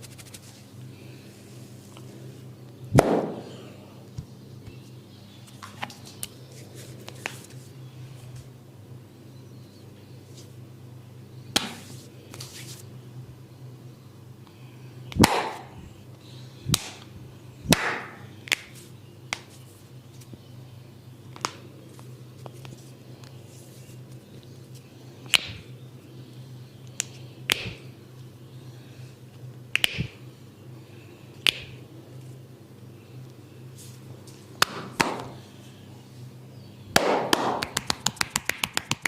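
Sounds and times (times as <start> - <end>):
hands slapping during massage: 3.0 - 3.4, 11.6 - 12.8, 15.1 - 15.7, 16.7 - 17.0, 17.7 - 19.6, 25.3 - 25.7, 27.0 - 27.8, 29.7 - 30.2, 31.4 - 31.8, 34.6 - 35.4, 37.0 - 39.0.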